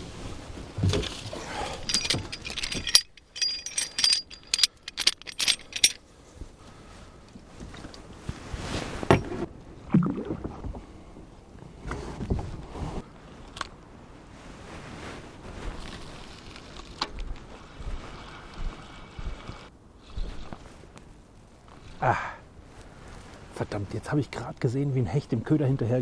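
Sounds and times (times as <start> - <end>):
water splashing and sloshing: 7.6 - 11.1.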